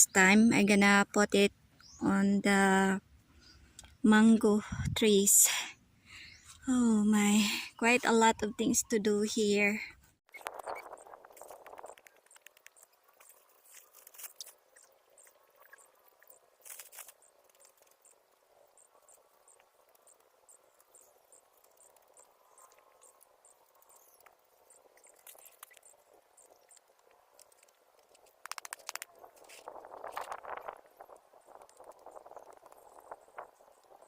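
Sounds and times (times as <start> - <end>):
insect chirping: 10.3 - 34.0.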